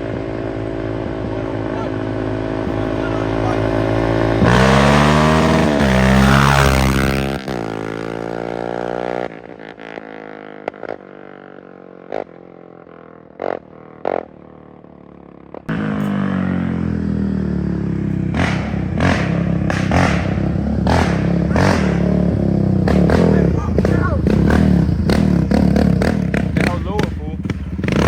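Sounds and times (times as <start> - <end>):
atv engine running: 0.0 - 28.0
exhaust pops and crackles: 18.3 - 22.2, 22.8 - 28.0.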